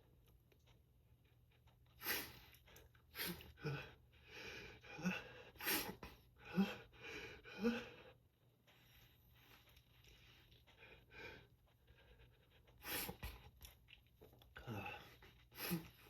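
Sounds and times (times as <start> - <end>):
gasping in-breaths: 3.2 - 8.2.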